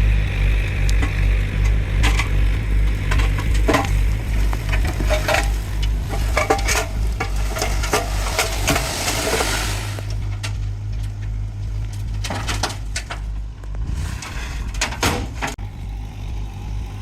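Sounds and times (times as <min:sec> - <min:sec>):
excavator engine running: 0:00.0 - 0:17.0
bucket scraping crushed stone: 0:01.6 - 0:13.3.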